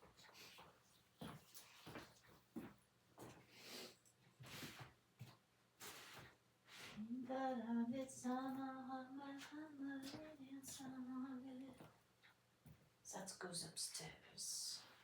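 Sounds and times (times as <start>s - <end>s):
woman singing without words: 7.0s - 11.9s.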